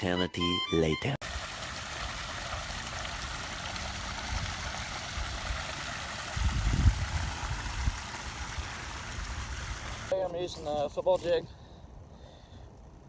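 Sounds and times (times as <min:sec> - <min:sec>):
wind buffeting microphone: 0:06.2 - 0:09.8.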